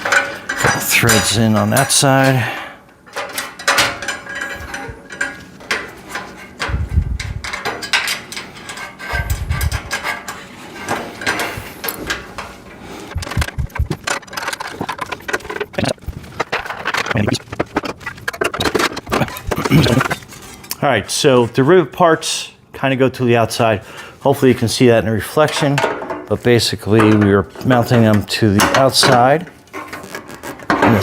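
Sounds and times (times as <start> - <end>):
metal parts clinking: 0.0 - 2.5, 3.1 - 20.7
dull low thumps: 13.2 - 14.1.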